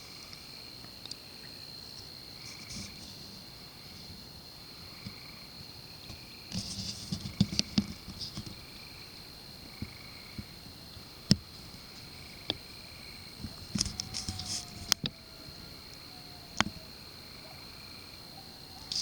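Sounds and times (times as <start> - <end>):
insects buzzing: 0.0 - 19.0
pulsing insect call: 0.0 - 19.0
clicks and rustles: 6.1 - 8.6, 13.4 - 15.2.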